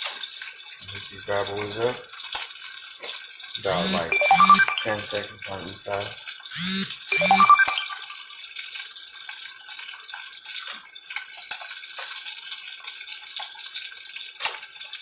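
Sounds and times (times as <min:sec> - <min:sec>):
food sizzling in a hot pan: 0:08.4 - 0:15.0.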